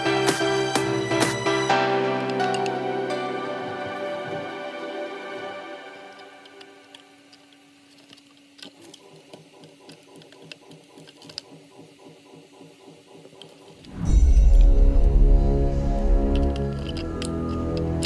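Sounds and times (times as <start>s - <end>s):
printer motor pulses and clicks: 8.2s - 13.8s
stepper motor hum: 13.8s - 18.0s.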